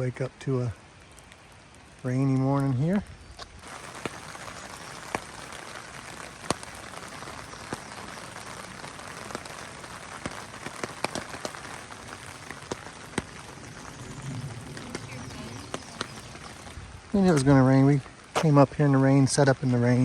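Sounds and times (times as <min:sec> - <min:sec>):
steady rain falling: 0:00.0 - 0:20.0
drops ticking on hard surface: 0:05.0 - 0:13.9.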